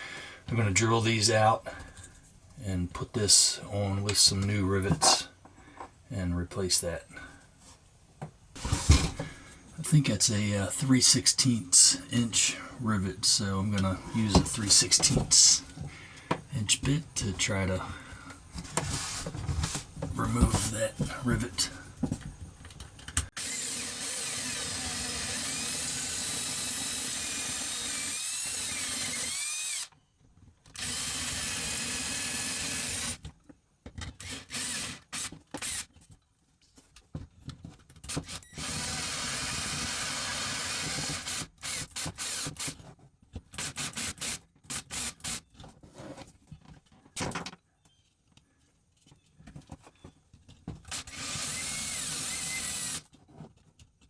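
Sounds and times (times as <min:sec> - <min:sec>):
power drill drilling metal: 0:11.7 - 0:18.2, 0:23.4 - 0:30.0, 0:30.8 - 0:33.2, 0:34.2 - 0:35.9, 0:38.1 - 0:42.8, 0:43.6 - 0:45.4, 0:50.9 - 0:53.1.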